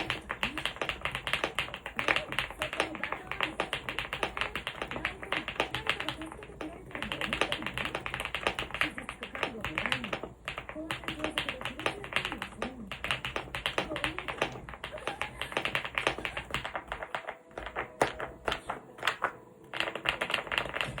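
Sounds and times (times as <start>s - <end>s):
mechanical keyboard typing: 0.0s - 21.0s.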